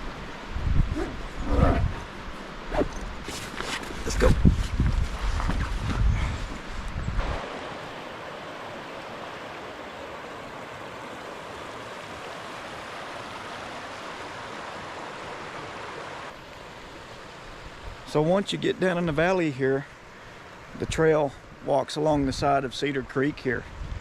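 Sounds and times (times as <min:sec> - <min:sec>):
creek water rushing: 0:06.4 - 0:23.2.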